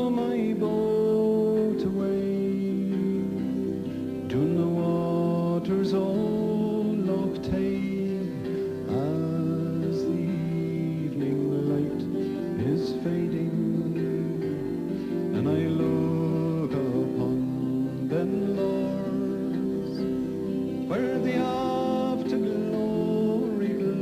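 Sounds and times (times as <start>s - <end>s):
slow folk song with guitar: 0.0s - 24.0s.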